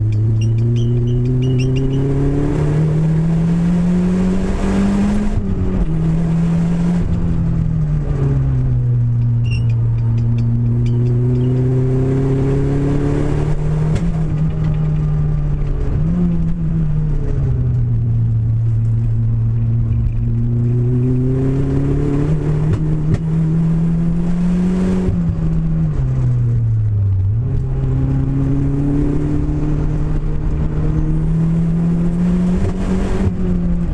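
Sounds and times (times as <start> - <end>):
car engine misfiring and revving: 0.0 - 33.9.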